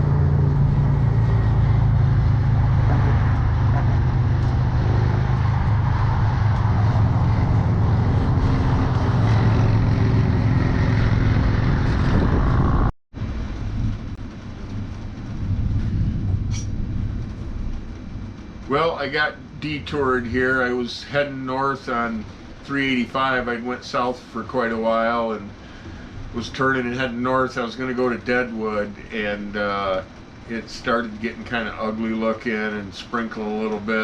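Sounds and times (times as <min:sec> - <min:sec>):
vehicle engine idling: 0:00.0 - 0:11.7
uneven noise: 0:00.0 - 0:32.0.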